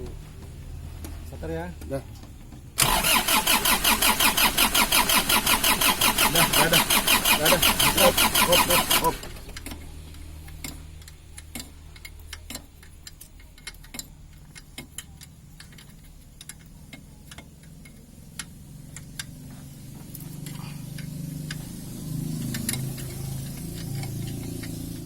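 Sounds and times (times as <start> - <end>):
diesel engine idling: 2.7 - 12.0.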